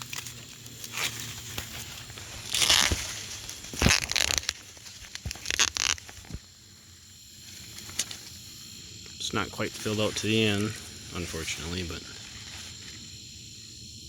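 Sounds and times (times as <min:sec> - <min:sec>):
corn stalks rustling and crackling: 0:00.0 - 0:06.6, 0:07.4 - 0:08.6, 0:09.3 - 0:13.2.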